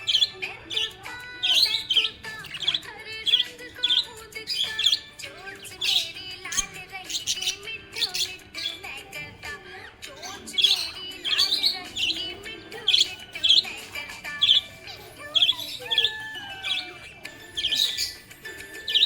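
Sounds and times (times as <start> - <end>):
budgerigar chirping: 0.0 - 9.0, 10.2 - 19.0.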